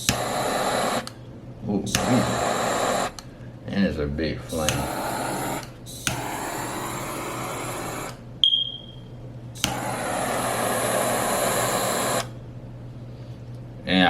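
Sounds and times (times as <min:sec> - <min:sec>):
lighter click: 0:00.0 - 0:01.2, 0:01.9 - 0:03.3, 0:04.5 - 0:08.6, 0:09.6 - 0:12.4
torch lighter gas hiss: 0:00.0 - 0:03.4, 0:04.5 - 0:08.3, 0:09.6 - 0:12.4.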